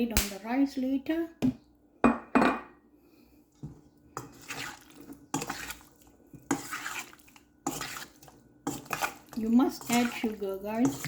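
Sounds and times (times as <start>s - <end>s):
wet stirring in a bowl: 3.5s - 11.0s.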